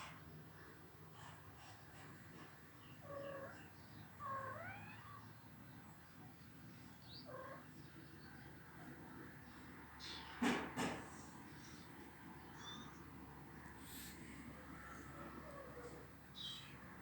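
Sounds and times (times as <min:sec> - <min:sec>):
cat mewing faintly: 0:07.2 - 0:07.7, 0:13.8 - 0:16.9.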